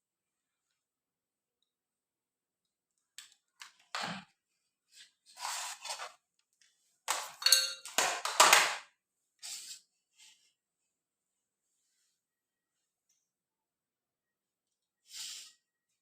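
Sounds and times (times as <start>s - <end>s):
handling scrapes and rubs: 4.9s - 6.2s.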